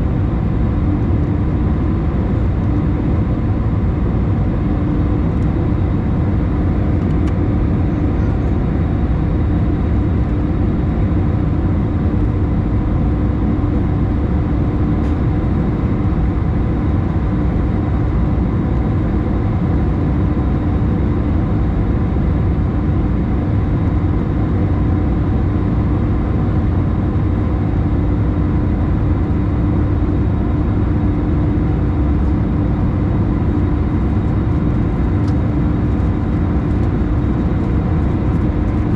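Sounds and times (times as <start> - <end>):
aircraft engines and airflow drone: 0.0 - 38.9
steady low hum: 0.0 - 38.9.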